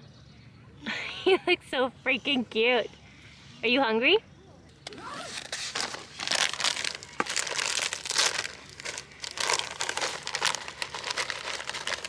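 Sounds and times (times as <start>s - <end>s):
plastic packaging crinkling: 4.9s - 12.0s.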